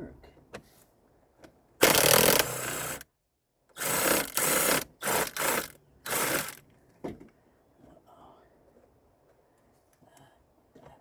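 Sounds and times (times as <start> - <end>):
socket ratchet wrench clicking: 1.8 - 3.0, 3.8 - 6.6.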